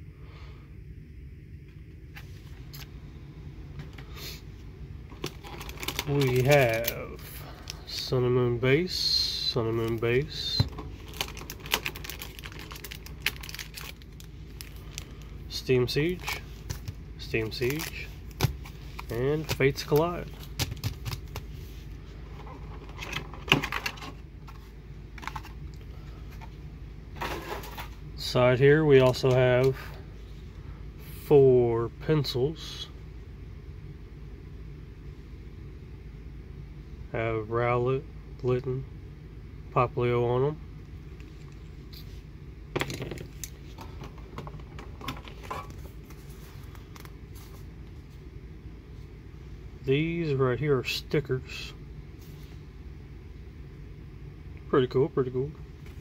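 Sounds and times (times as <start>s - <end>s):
steady low hum: 0.0s - 56.0s
small items clicking: 5.2s - 7.0s.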